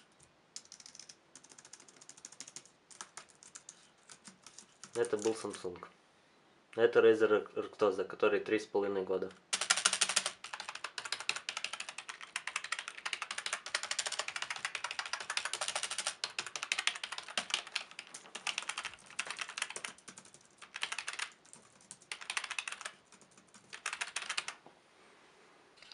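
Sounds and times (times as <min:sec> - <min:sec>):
fast typing on keyboard: 0:00.6 - 0:05.6, 0:09.5 - 0:24.6.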